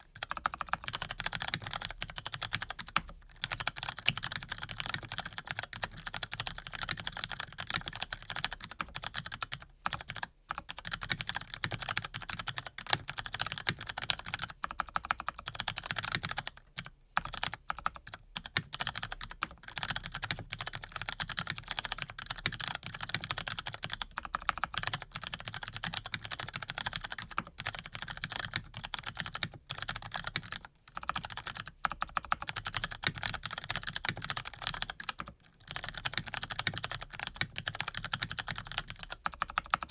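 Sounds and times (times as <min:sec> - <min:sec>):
mechanical keyboard typing: 0:00.2 - 0:39.9.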